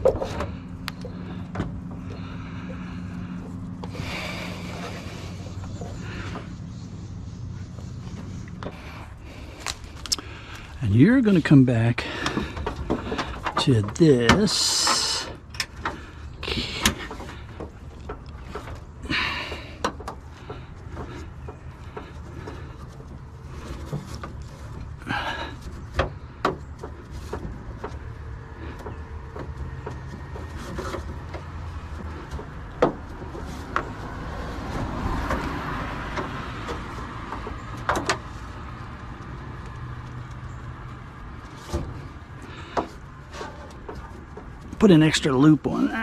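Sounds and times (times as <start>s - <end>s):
steady low hum: 0.0s - 35.3s
knocks clicks and rustles: 0.0s - 46.0s.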